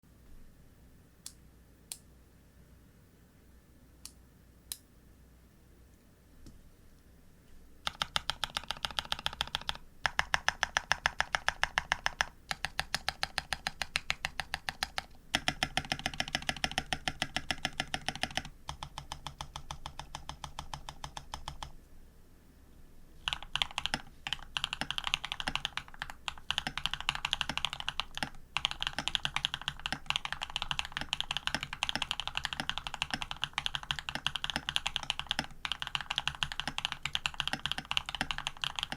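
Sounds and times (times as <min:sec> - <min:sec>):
fast mechanical keyboard typing: 0:07.8 - 0:21.7, 0:23.2 - 0:38.9.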